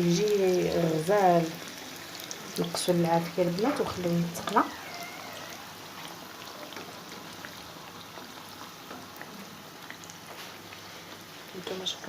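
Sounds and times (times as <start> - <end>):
oil crackling and popping: 0.0 - 11.6
dough sizzling in hot oil: 0.0 - 12.0.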